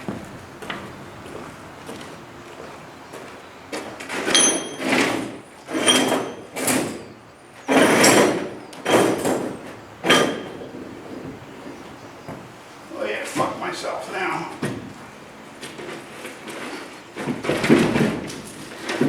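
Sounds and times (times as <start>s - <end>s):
high metallic ring: 4.3s - 5.1s.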